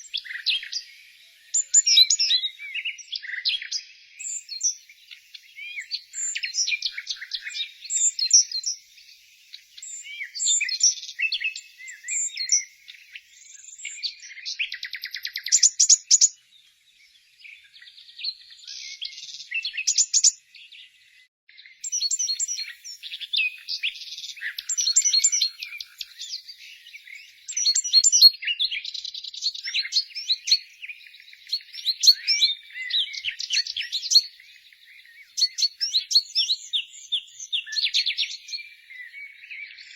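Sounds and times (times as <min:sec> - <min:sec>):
songbirds chirping and singing: 0:00.0 - 0:39.9
buzzy bird trill: 0:21.8 - 0:36.8.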